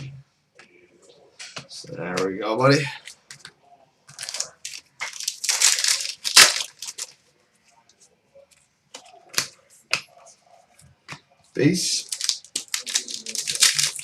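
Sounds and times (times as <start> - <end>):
cards clicking and rustling: 4.1 - 7.2, 11.9 - 14.0
wrapper tearing and crinkling: 4.1 - 7.2, 11.9 - 14.0.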